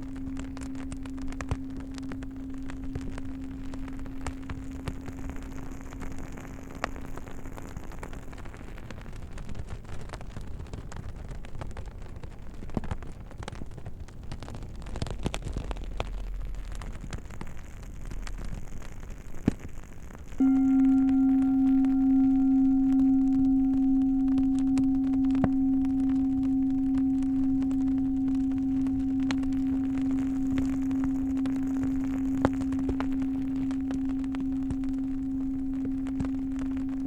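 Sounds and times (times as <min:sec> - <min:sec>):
singing bowl tone: 0:00.0 - 0:08.6, 0:20.4 - 0:37.0.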